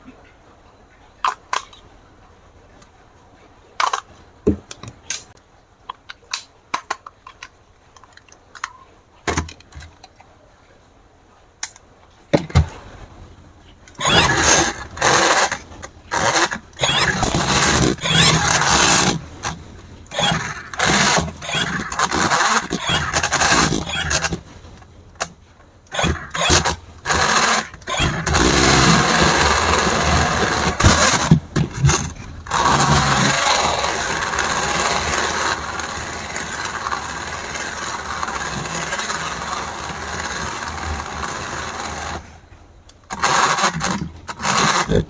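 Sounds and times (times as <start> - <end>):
plastic toy clicks and knocks: 1.2 - 1.8, 5.9 - 10.2, 13.9 - 24.4, 25.9 - 42.2, 43.0 - 45.0
toy electric motor whirring: 14.0 - 24.6, 25.9 - 42.3, 43.1 - 45.0.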